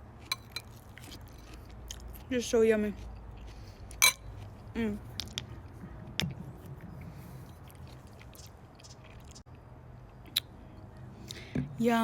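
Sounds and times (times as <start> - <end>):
mouth chewing soft food: 0.1 - 2.3, 2.9 - 10.6
sharp mouth clicks: 10.3 - 10.5.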